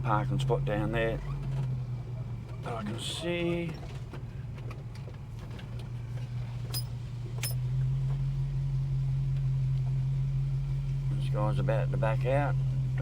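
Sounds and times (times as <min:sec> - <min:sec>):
car engine running: 0:04.0 - 0:13.0.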